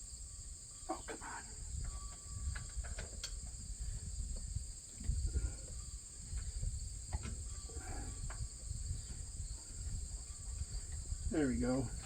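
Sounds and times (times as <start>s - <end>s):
crickets trilling: 0.0s - 12.0s.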